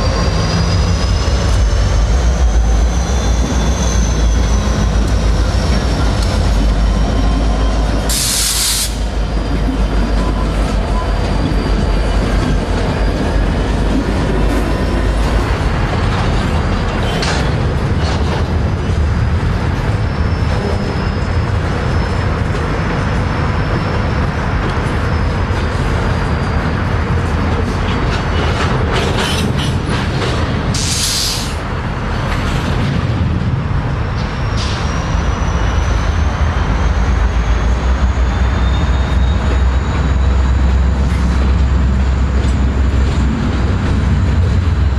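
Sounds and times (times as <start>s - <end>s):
high squealing tones: 0.0s - 8.1s
diesel locomotive rumbling: 0.0s - 44.9s
air hiss: 8.1s - 9.1s.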